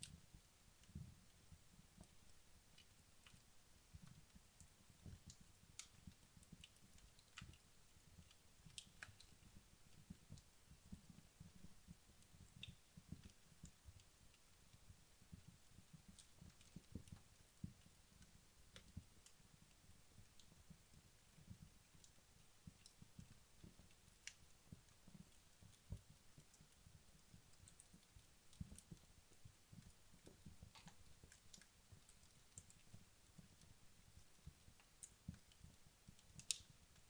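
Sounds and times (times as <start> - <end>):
fire crackling and popping: 0.0 - 37.0.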